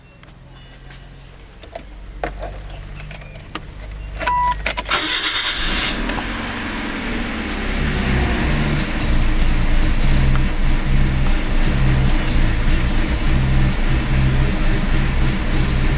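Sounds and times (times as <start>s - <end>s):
car engine starting and idling: 0.0s - 15.9s
keys clicking in ignition: 1.4s - 6.3s
short beep: 4.0s - 4.8s.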